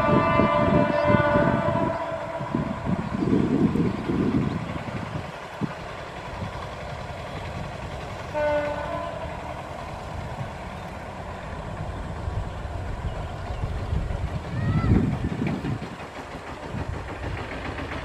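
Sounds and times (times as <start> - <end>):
locomotive horn blast: 0.0 - 2.9, 8.3 - 9.6
train rumbling: 0.0 - 18.0.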